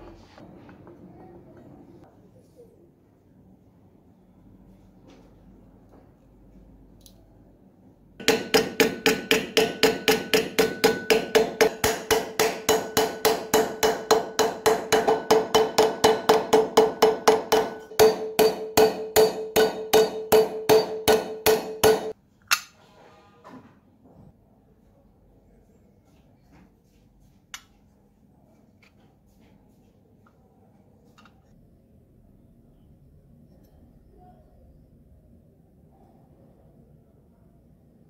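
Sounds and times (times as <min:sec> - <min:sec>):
hammer striking metal: 0:08.2 - 0:22.7.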